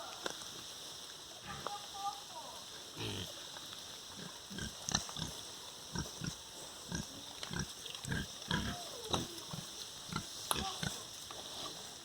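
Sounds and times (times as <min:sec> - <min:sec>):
pigs grunting: 0:03.0 - 0:03.4, 0:04.2 - 0:11.1.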